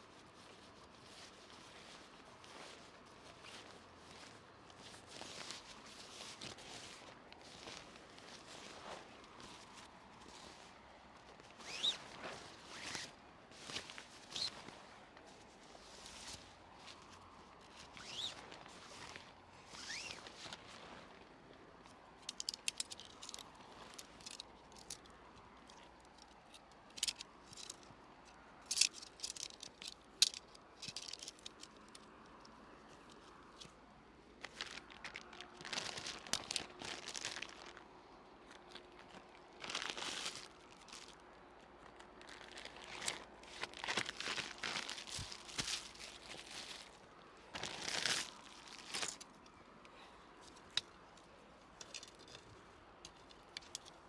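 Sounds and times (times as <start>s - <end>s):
rustling: 0.0s - 54.0s
dry material crinkling and crunching: 34.4s - 50.0s.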